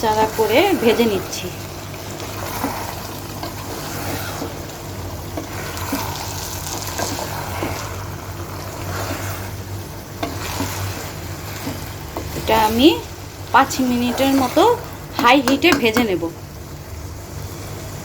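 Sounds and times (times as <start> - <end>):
food sizzling in a pot: 0.0 - 18.0
spoon scraping pot: 2.2 - 4.7, 5.3 - 9.6, 10.2 - 12.8.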